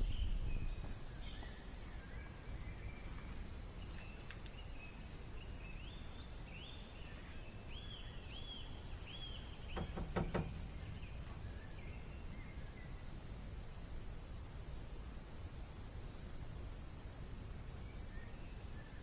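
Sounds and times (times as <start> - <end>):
faint low outdoor rumble: 0.0 - 19.0.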